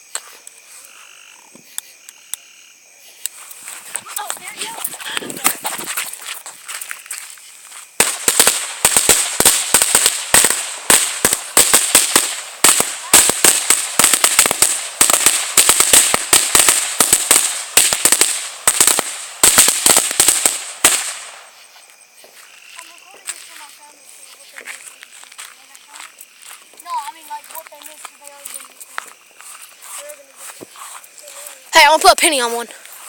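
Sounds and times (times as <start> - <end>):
firecrackers going off: 7.9 - 21.6.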